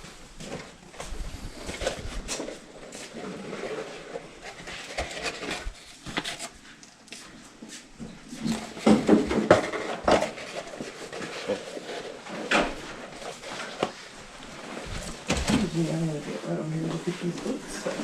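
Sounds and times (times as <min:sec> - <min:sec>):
objects clicking and knocking: 0:08.4 - 0:14.0.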